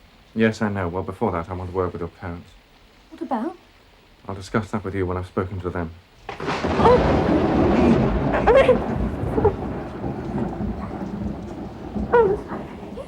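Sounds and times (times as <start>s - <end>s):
steady rain: 0.0s - 13.0s
thunder rumbling: 6.2s - 13.0s.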